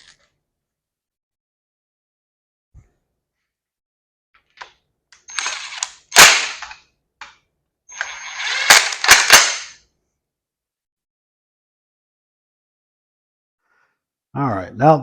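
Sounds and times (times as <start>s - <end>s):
power tool whining: 5.3s - 6.8s, 7.9s - 9.7s.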